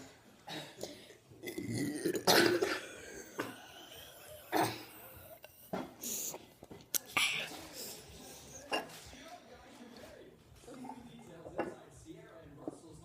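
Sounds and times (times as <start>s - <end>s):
person burping: 0.5s - 6.3s.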